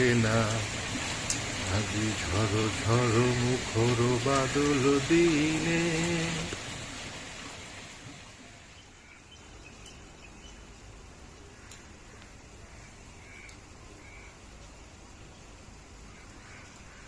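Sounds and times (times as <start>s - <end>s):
steady rain falling: 0.0s - 17.0s
light ticks: 1.2s - 1.5s, 11.6s - 12.4s, 13.4s - 13.7s
bird calling faintly: 8.4s - 17.0s.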